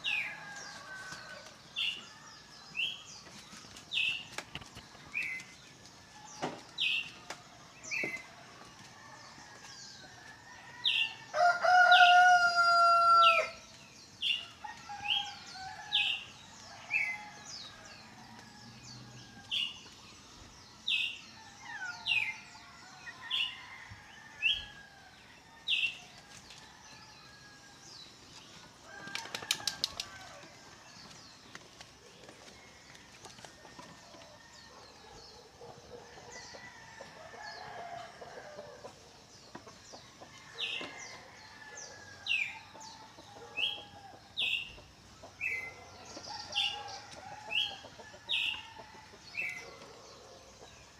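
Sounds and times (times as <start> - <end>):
rooster crowing: 10.8 - 13.6.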